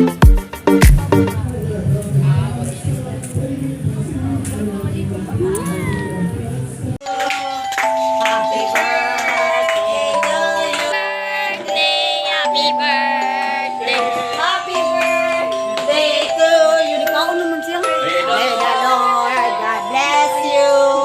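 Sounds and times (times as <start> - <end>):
held instrumental notes: 0.0 - 2.4, 7.0 - 21.0
person singing: 7.0 - 21.0.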